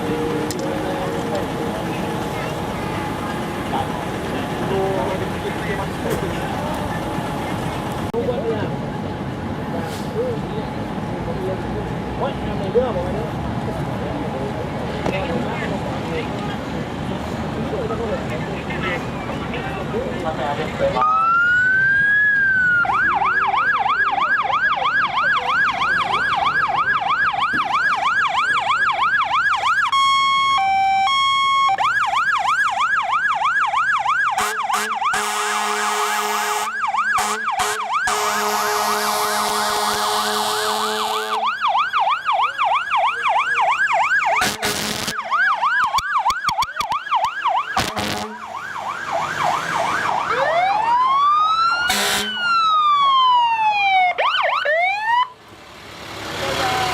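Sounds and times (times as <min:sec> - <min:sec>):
emergency vehicle sirens: 0:00.0 - 0:56.9
steady horn-like tone: 0:47.8 - 0:48.5.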